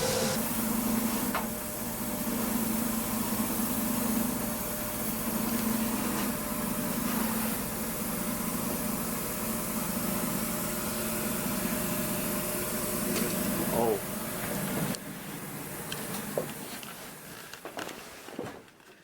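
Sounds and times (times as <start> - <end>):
electric motor humming: 0.0 - 0.4.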